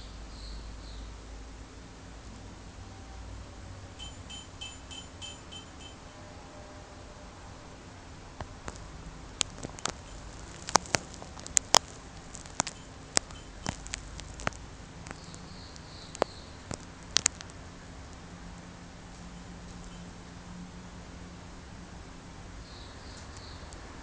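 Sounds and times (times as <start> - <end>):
faint high bell ring: 4.0 - 6.8
sharp clicks and light knocks: 8.4 - 18.2.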